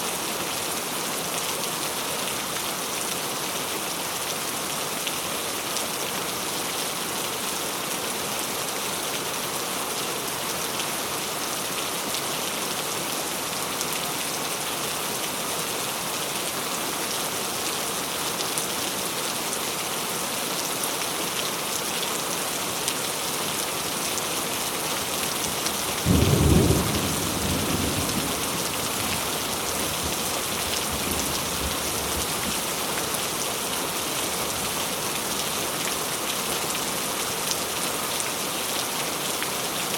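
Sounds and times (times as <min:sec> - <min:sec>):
steady rain: 0:00.0 - 0:39.9
thunderclap rumbling: 0:26.1 - 0:29.2.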